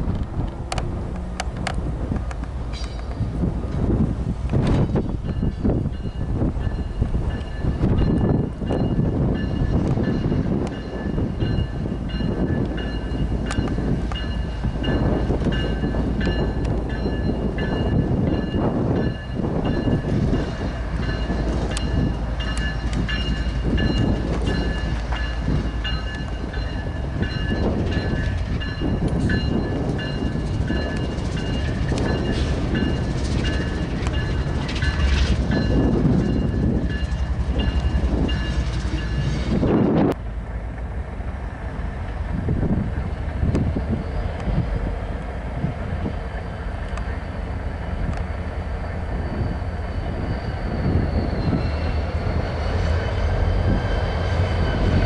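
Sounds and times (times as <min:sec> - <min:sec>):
freight train rumbling: 0:00.0 - 0:55.0
high ringing whine: 0:46.0 - 0:55.0.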